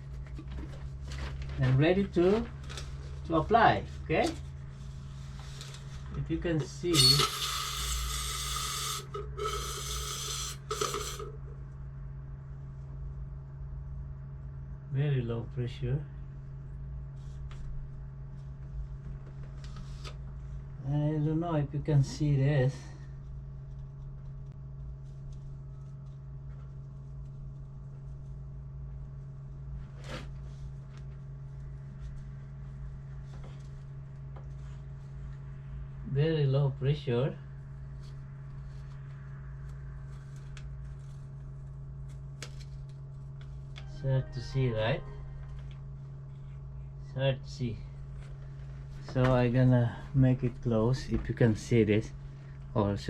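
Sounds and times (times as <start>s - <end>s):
steady low hum: 0.0s - 53.0s
aerosol foam spray hissing: 6.9s - 11.4s.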